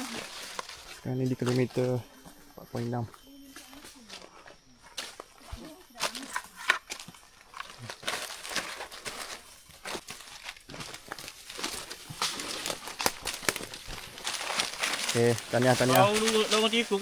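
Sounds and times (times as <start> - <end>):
footsteps on leaf litter: 0.0 - 2.1, 3.5 - 17.0
dry leaves crackling and rustling: 0.0 - 17.0.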